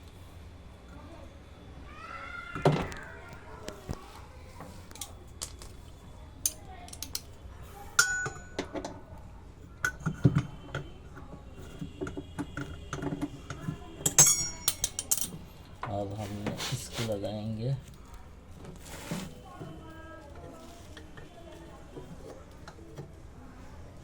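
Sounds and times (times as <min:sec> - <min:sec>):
metal tools clinking together: 0:06.4 - 0:07.3, 0:08.0 - 0:08.7, 0:14.0 - 0:15.4.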